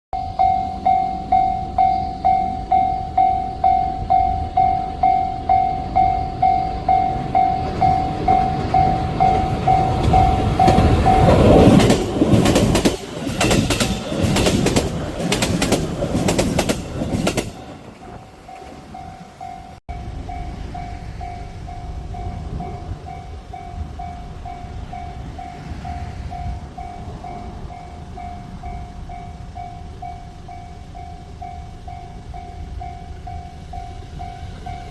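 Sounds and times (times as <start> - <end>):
level crossing alarm ringing: 0.2 - 12.0
electric train passing: 0.2 - 34.9
train wheels clacking over rail joints: 7.2 - 18.8.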